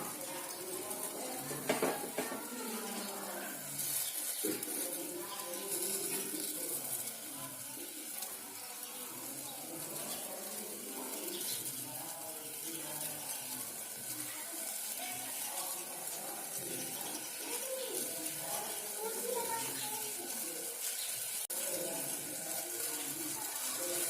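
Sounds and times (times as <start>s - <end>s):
water hissing: 0.0s - 24.0s
utensil knocking: 1.5s - 2.6s.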